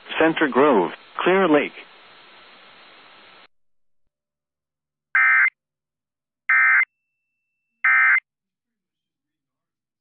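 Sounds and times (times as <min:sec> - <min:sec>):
faint hiss: 0:00.0 - 0:03.5.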